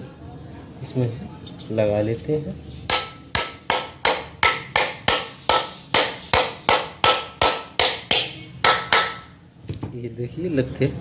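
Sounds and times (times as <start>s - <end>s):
hammer tapping metal: 2.9s - 9.4s.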